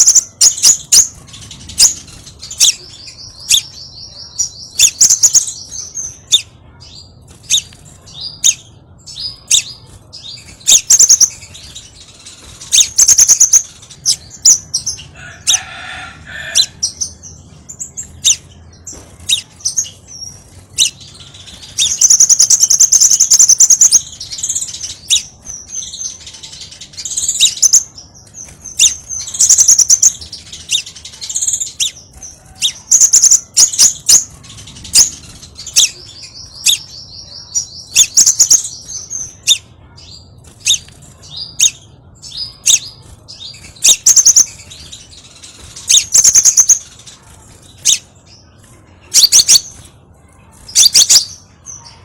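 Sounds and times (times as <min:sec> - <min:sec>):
bird rapid trill: 0:00.0 - 0:52.0.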